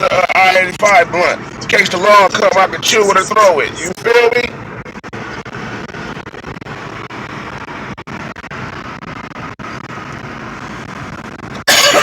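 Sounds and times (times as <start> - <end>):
car road and engine noise: 0.0 - 12.0.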